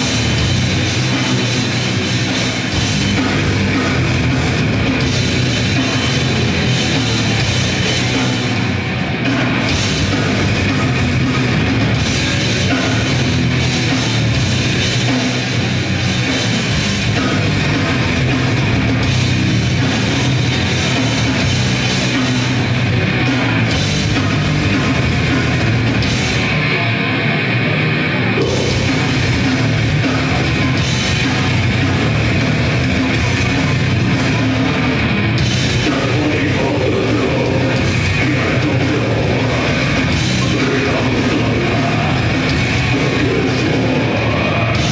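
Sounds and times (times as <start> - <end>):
grindcore band playing live: 0.0 - 44.9.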